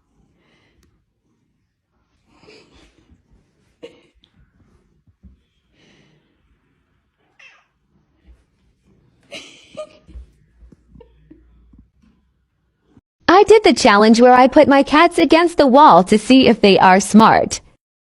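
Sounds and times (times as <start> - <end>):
cat meowing: 7.4 - 7.7.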